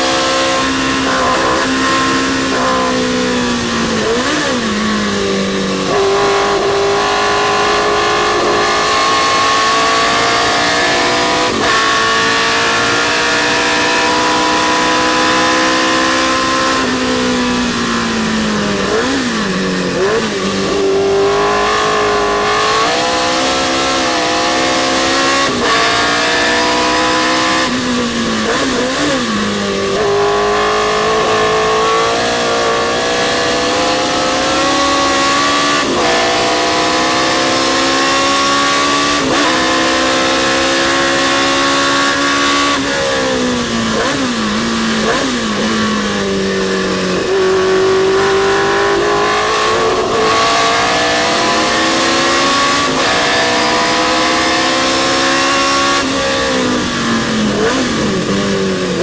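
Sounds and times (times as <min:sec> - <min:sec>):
racing car engine revving: 0:00.0 - 0:59.0.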